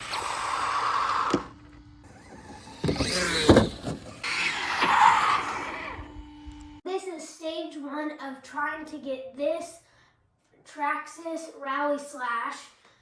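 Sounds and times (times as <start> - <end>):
toy car electric motor whining: 0.0 - 6.6.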